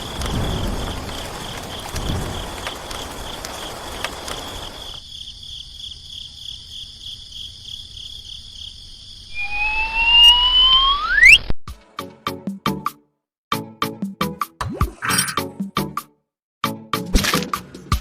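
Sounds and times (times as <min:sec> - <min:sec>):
high pulsing insect-like trill: 0:09.3 - 0:11.3
tone rising steeply in pitch: 0:09.3 - 0:11.5.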